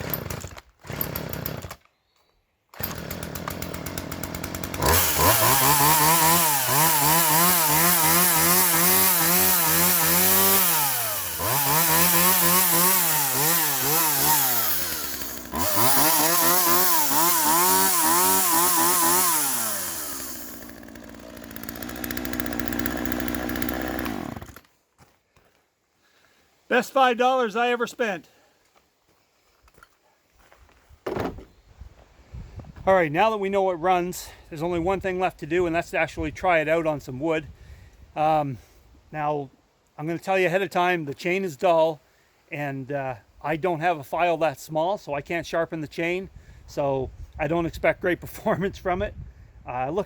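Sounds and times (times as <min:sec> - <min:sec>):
chainsaw idling and revving: 0:00.0 - 0:01.8, 0:02.8 - 0:24.7.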